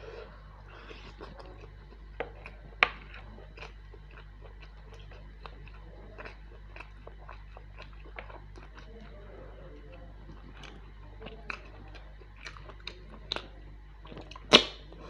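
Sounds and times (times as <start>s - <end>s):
faint low hum: 0.0s - 15.0s
person chewing food: 0.0s - 15.0s.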